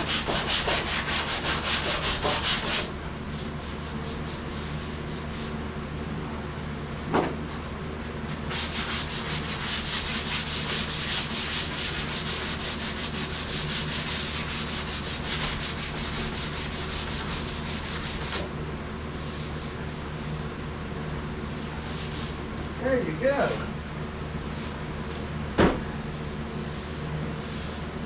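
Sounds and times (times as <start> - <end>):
sandpaper strokes: 0.0 - 5.5, 8.5 - 18.4, 21.4 - 22.8, 26.1 - 27.9.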